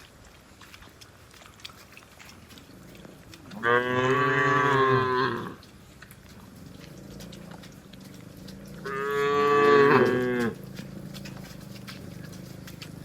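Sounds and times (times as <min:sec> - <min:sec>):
cow mooing: 0:03.5 - 0:05.6, 0:07.0 - 0:12.8.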